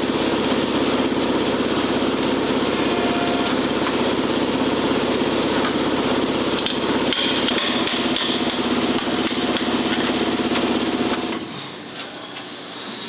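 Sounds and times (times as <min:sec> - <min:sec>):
power tool hammering: 0:06.6 - 0:11.4.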